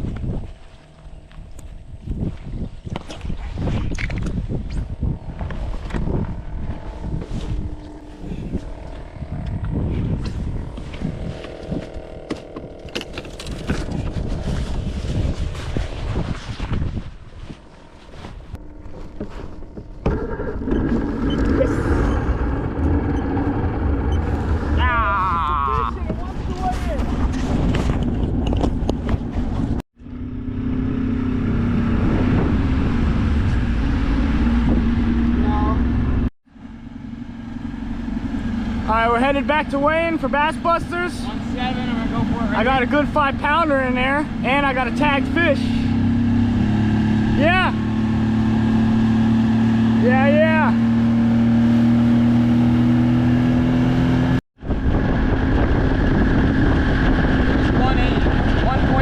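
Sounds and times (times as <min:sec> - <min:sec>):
wind noise: 0:00.0 - 0:36.3, 0:38.2 - 0:59.0
outboard motor running: 0:00.2 - 0:16.0, 0:18.6 - 0:59.0
water noise: 0:18.6 - 0:29.8.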